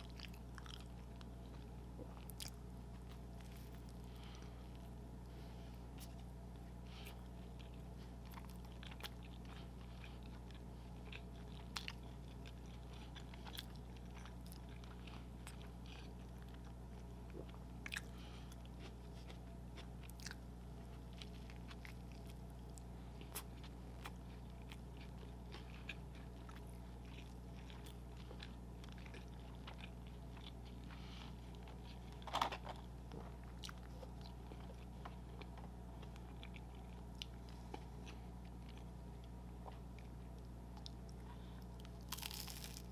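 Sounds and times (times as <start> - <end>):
chewing and biting food: 0.0 - 5.1, 5.8 - 42.9
steady low hum: 0.0 - 42.9
food crunches: 18.8 - 42.9.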